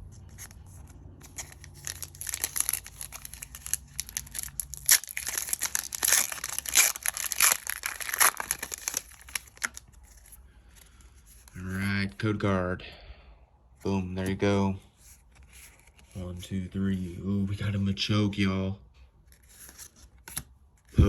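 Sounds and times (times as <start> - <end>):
foil wrapper tearing and crinkling: 1.2 - 10.3.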